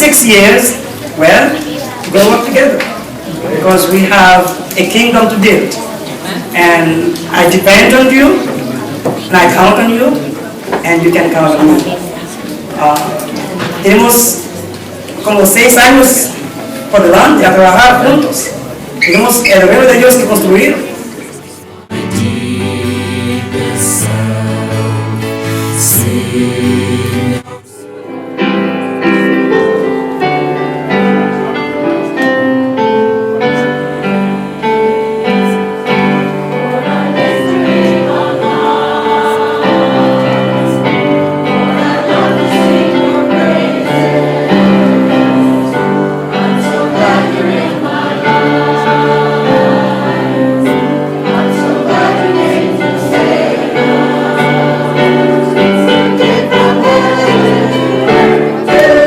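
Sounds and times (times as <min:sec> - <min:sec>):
choir singing a hymn: 0:15.4 - 0:32.0, 0:33.5 - 0:59.0
instrumental accompaniment: 0:21.0 - 0:59.0.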